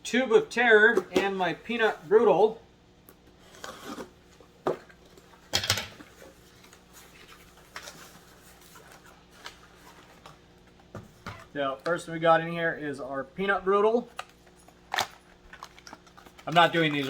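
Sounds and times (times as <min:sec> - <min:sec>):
packaging rustling: 0:14.1 - 0:17.0.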